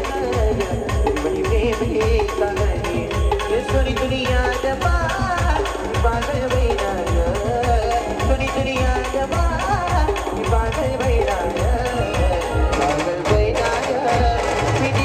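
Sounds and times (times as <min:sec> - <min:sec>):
heavy drum beats: 0:00.0 - 0:15.0
wavering lead melody: 0:05.7 - 0:15.0.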